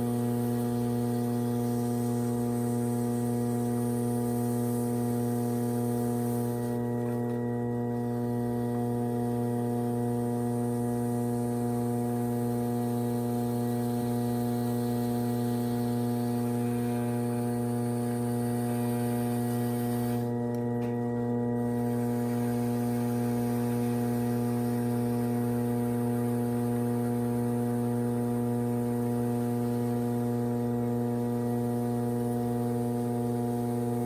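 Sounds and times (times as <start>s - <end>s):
potter's wheel motor humming: 0.0s - 34.0s.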